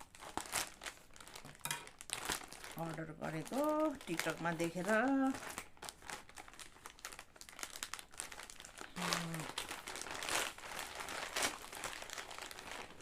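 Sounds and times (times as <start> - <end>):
packaging being torn open: 0.0 - 4.4, 5.0 - 13.0
person humming: 8.9 - 9.6.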